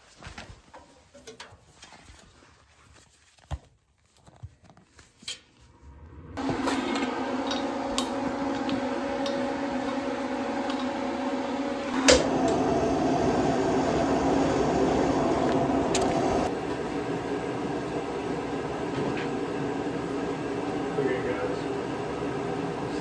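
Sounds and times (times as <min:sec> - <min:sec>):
mechanical hum: 0:05.5 - 0:23.0.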